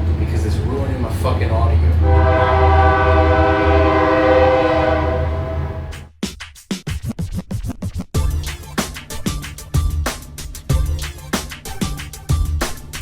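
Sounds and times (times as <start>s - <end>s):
train rumbling past: 0.0s - 6.1s
train horn blast: 1.9s - 6.1s
music with punchy beat: 5.9s - 13.0s.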